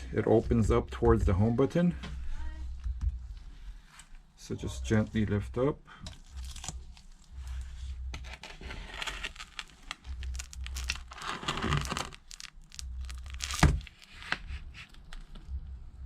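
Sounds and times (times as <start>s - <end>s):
glass peeling from adhesive: 8.4s - 15.2s.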